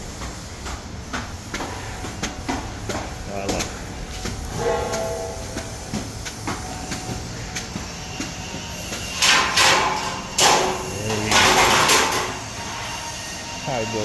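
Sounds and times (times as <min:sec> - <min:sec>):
loud harsh machine bursts: 0:04.5 - 0:14.0.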